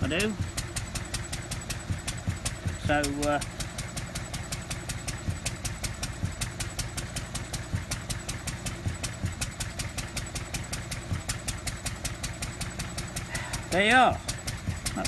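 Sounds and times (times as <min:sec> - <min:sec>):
stationary engine running: 0:00.0 - 0:15.0.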